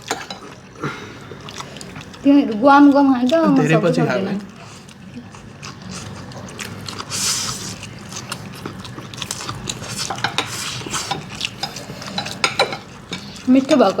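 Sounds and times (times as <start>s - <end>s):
utensils clicking against bowls: 8.6s - 14.0s.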